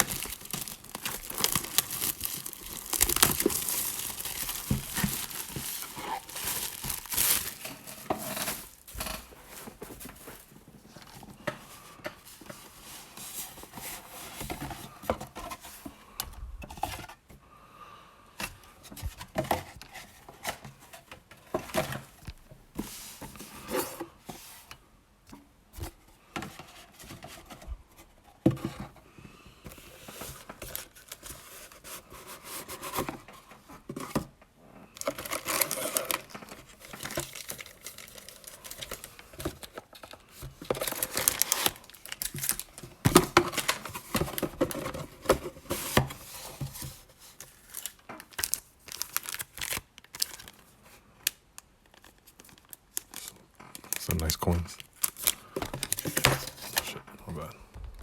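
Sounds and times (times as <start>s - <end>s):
cardboard box being handled: 0.0s - 11.2s, 57.8s - 58.0s
plastic wrapping crinkling: 0.0s - 11.2s, 35.0s - 45.4s, 46.0s - 56.9s.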